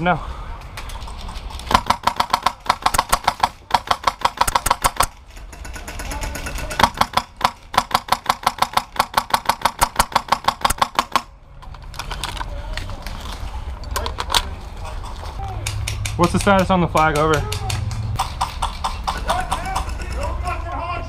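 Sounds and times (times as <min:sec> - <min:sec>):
airsoft rifle firing rapid shots: 0:01.7 - 0:05.1, 0:05.8 - 0:11.3.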